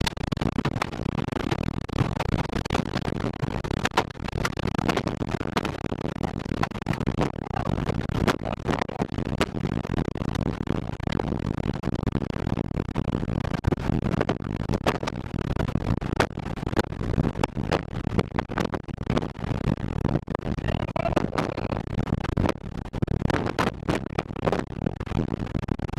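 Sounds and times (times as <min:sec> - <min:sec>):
heavy storm wind rushing: 0:05.6 - 0:10.0, 0:20.6 - 0:22.4.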